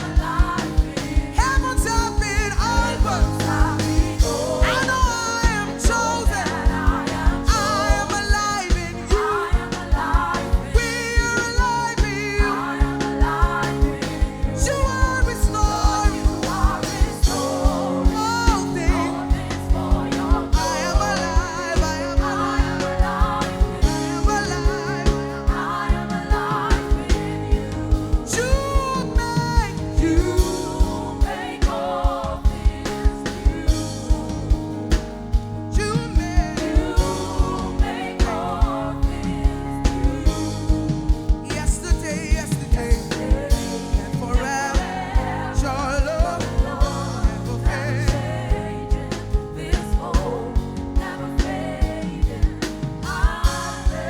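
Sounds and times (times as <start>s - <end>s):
person singing: 0.0s - 32.2s
band playing sustained chords: 0.0s - 54.0s
steady drum beat: 0.0s - 54.0s.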